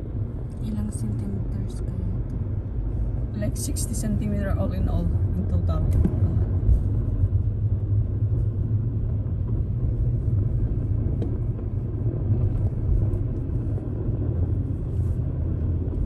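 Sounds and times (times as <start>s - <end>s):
car engine rumble: 0.0s - 16.0s
tyre noise on road: 5.2s - 16.0s.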